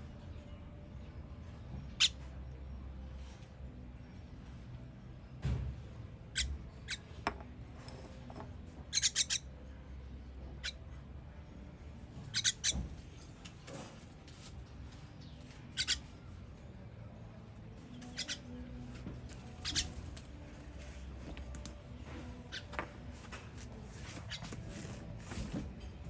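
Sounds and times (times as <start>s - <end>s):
baby bird cheeping: 8.9s - 9.5s, 12.3s - 12.8s, 15.7s - 16.1s, 18.0s - 18.5s, 19.6s - 20.0s.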